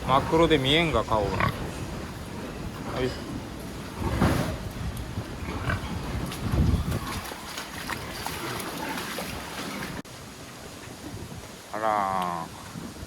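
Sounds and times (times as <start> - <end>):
strong wind buffeting microphone: 0.0 - 8.7, 10.6 - 11.7.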